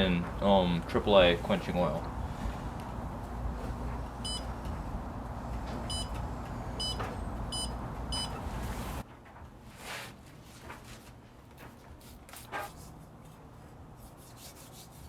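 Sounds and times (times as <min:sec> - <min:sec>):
steady low hum: 0:00.0 - 0:09.0
short electronic keypad beeps: 0:04.2 - 0:04.5, 0:05.9 - 0:06.2, 0:06.8 - 0:08.4.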